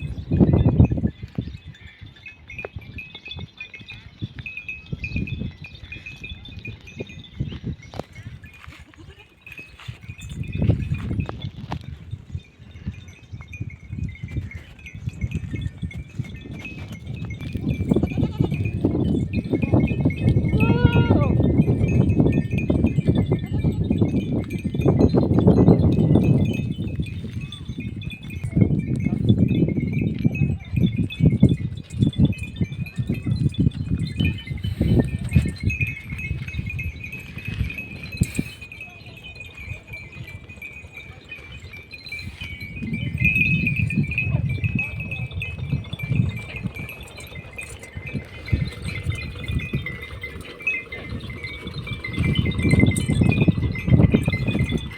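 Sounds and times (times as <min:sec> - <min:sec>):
sheep hooves shuffling: 0:00.0 - 0:54.9
small bells clinking: 0:00.0 - 0:54.9
sheep bleating: 0:20.6 - 0:21.4.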